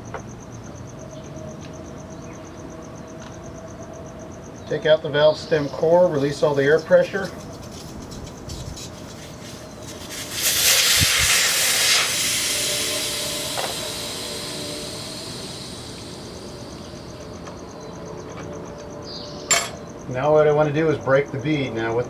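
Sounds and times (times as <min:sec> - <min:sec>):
air hissing out of tire valve: 0:06.2 - 0:17.8.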